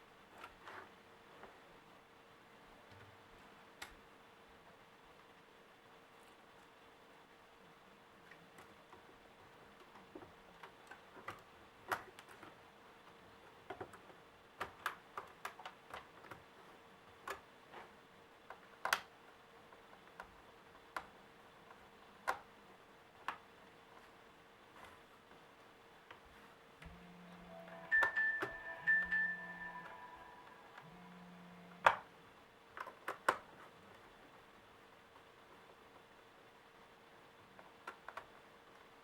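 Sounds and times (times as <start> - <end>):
faint steady hum: 0.0 - 39.0.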